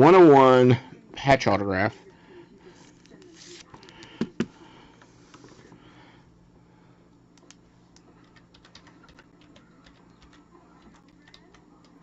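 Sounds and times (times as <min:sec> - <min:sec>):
faint low hum: 0:00.0 - 0:12.0
typing on computer keyboard: 0:08.2 - 0:12.0.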